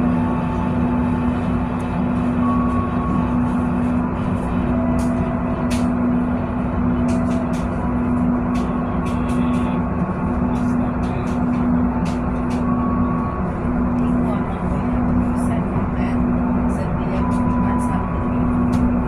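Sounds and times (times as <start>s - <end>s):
diesel locomotive engine running: 0.0s - 19.0s.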